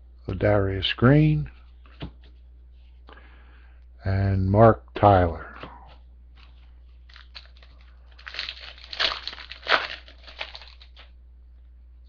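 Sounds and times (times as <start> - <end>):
foil wrapper crinkling and tearing: 7.0 - 11.1.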